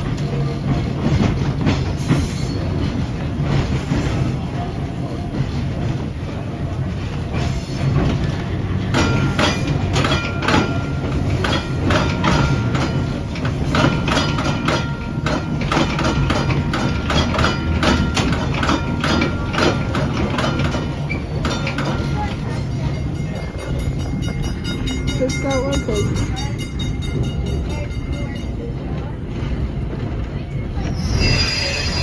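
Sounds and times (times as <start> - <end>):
railcar running on track: 0.0 - 32.0
faint high squeal: 30.8 - 32.0.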